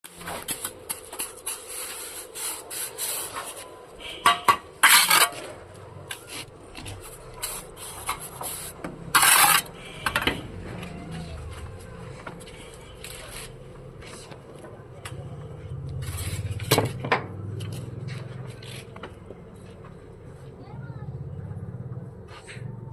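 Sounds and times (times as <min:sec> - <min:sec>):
trowel scraping mortar: 0:00.2 - 0:03.7, 0:04.8 - 0:05.5, 0:06.1 - 0:09.9, 0:16.0 - 0:16.7.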